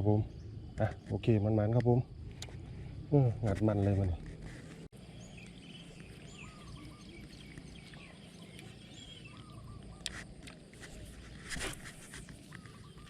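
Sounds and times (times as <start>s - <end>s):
rustle: 1.7s - 13.0s
bird chirps: 5.0s - 13.0s.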